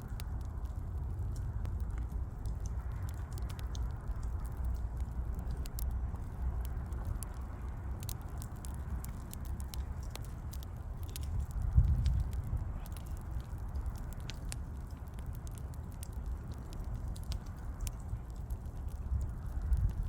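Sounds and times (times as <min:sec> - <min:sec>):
burning wood crackling: 0:00.0 - 0:20.0
low rumble: 0:00.0 - 0:20.0.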